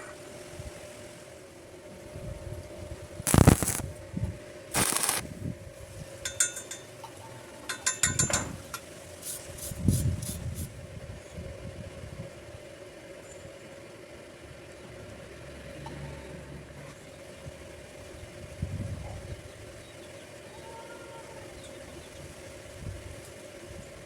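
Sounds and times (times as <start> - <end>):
faint hum: 0.0 - 7.8
steel scraping clatter: 4.8 - 5.2, 6.2 - 8.9
metallic clinking and rattling: 6.2 - 7.1, 7.7 - 8.9.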